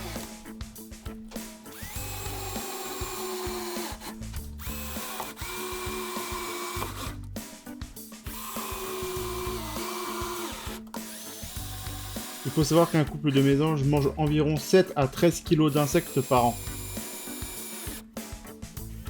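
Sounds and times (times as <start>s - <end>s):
power drill running: 0.0s - 0.4s, 1.7s - 7.2s, 8.3s - 13.1s, 15.7s - 18.1s.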